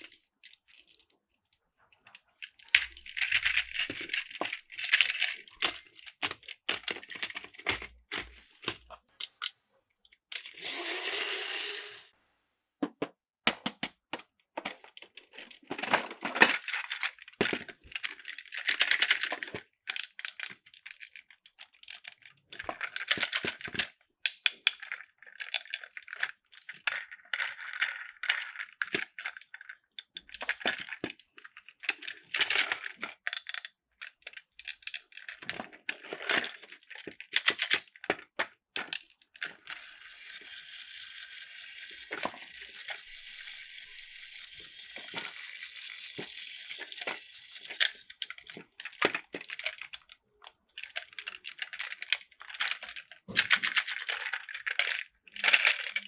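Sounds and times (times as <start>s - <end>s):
plastic toy train cars rattling: 2.1s - 9.5s, 14.6s - 56.0s
toy train motor whirring: 2.4s - 9.5s, 10.3s - 12.1s, 18.0s - 22.0s, 32.1s - 33.7s, 39.4s - 49.9s, 50.9s - 56.0s.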